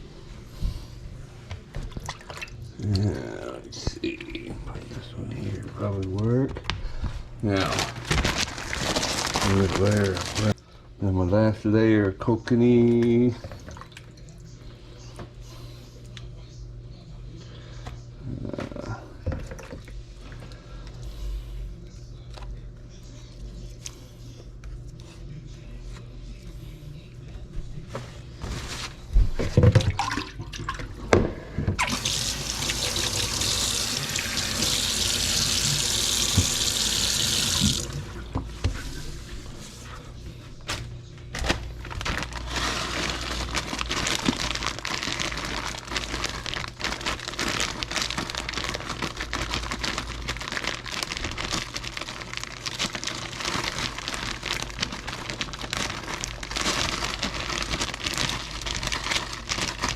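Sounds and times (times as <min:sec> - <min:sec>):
faucet running into sink: 0:31.8 - 0:38.0.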